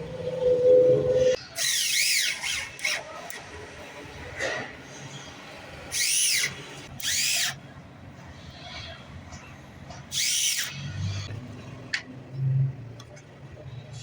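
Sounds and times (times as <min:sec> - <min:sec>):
power tool whining: 0:05.9 - 0:07.6, 0:10.1 - 0:11.2.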